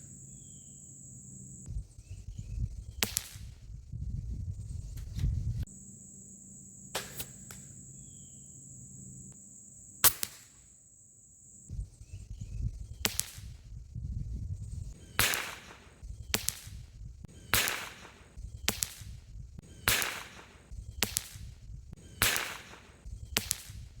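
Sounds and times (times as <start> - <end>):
low rumble: 1.6 - 5.7, 13.5 - 15.0
air rifle shots: 3.0 - 3.6, 6.9 - 7.8, 10.0 - 10.6, 13.0 - 13.6, 15.0 - 24.0
crossbow shots: 3.0 - 3.6, 6.9 - 7.8, 10.0 - 10.7, 13.0 - 13.6, 15.0 - 23.9.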